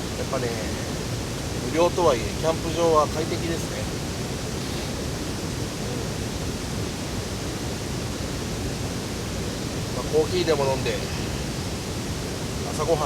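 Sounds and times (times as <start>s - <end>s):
steady rushing noise: 0.0s - 13.0s.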